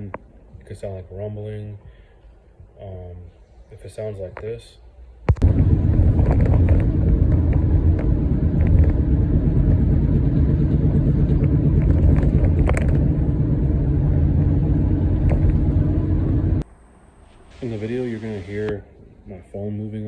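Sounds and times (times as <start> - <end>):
wheel bearing rumbling: 5.3 - 16.6.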